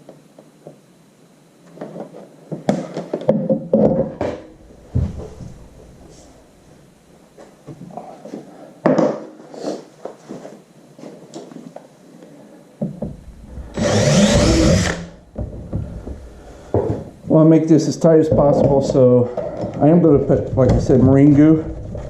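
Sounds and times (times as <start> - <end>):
power drill running: 13.5 - 15.2.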